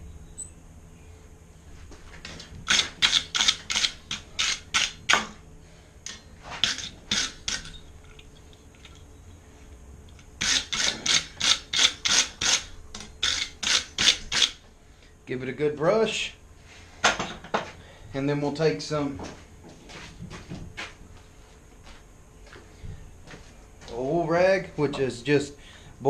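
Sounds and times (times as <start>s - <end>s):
wire brush scrubbing steel: 10.4s - 14.6s.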